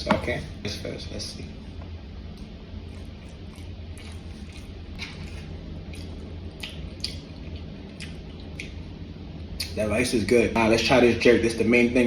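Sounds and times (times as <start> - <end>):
steady low hum: 0.0 - 12.0
person chewing wetly: 2.8 - 8.8
wet mouth clicks and smacks: 6.0 - 8.8.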